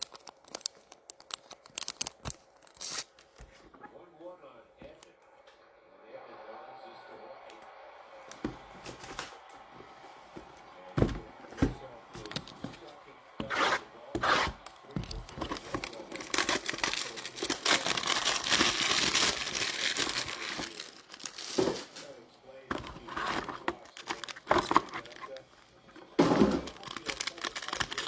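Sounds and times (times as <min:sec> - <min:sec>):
wrappers tearing and crinkling: 0:00.0 - 0:03.4, 0:13.5 - 0:22.2, 0:22.8 - 0:25.8, 0:26.5 - 0:28.0.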